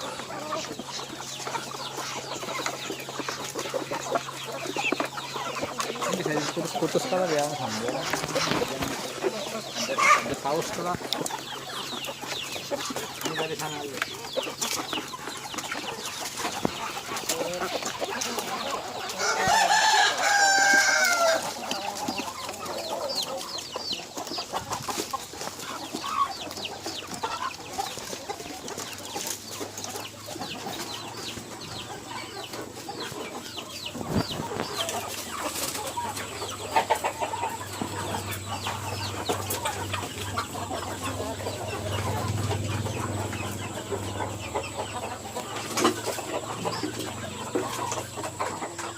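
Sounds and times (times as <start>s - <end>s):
chickens clucking: 0.0s - 48.9s
rooster crowing: 19.2s - 21.5s.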